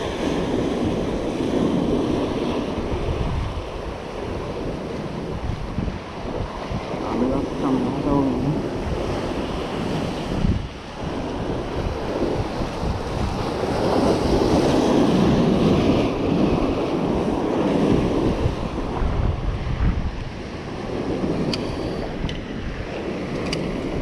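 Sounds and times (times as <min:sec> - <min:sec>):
ocean surf washing in: 0:00.0 - 0:24.0
wind buffeting microphone: 0:00.0 - 0:24.0.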